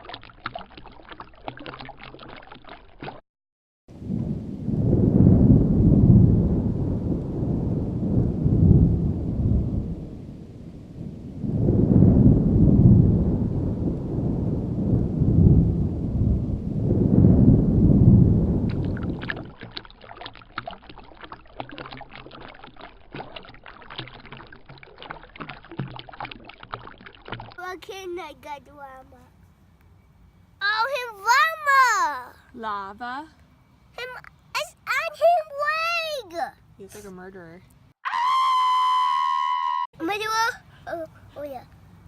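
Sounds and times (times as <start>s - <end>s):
deep rumbling: 3.9s - 19.5s.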